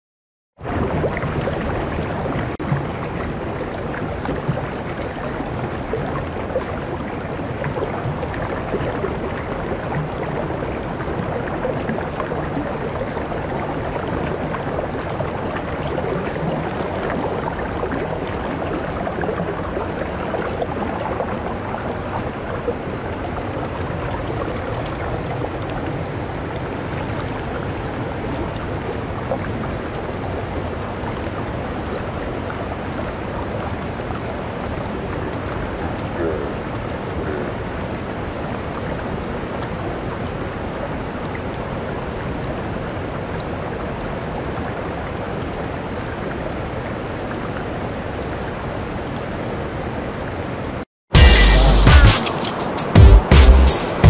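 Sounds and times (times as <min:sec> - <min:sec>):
waterfall rushing: 0:51.2 - 0:54.0.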